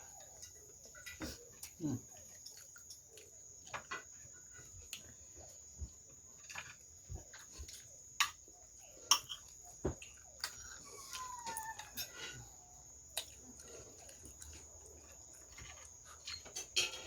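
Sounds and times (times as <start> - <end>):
chewing and mouth noises: 9.1 - 16.6.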